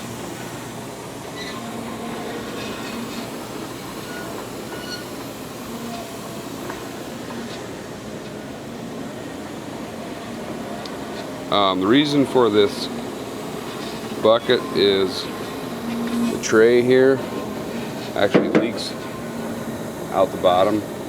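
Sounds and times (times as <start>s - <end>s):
band saw humming: 0.0s - 21.0s
faint saw squeals: 1.4s - 6.5s.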